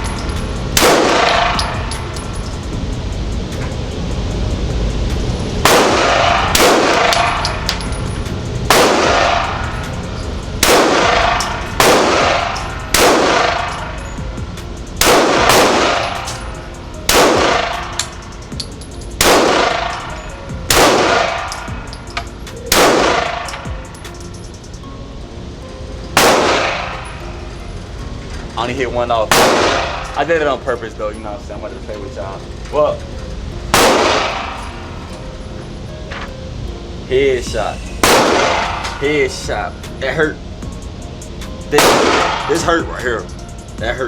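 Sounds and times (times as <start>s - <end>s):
gunshots echoing indoors: 0.8s - 1.7s, 5.6s - 7.5s, 8.7s - 9.6s, 10.6s - 13.8s, 15.0s - 16.4s, 17.1s - 18.1s, 19.2s - 20.0s, 20.7s - 21.6s, 22.7s - 23.5s, 26.2s - 27.0s, 29.3s - 30.1s, 33.8s - 34.6s, 38.0s - 38.9s.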